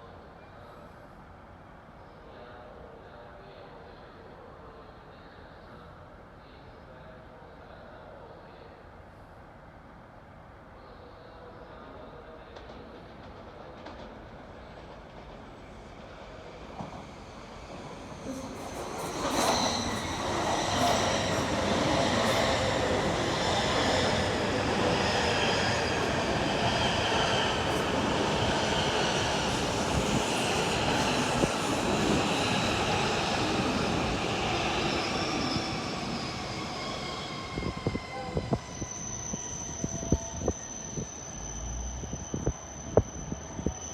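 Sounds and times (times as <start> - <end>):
train rumbling: 12.5 - 43.9.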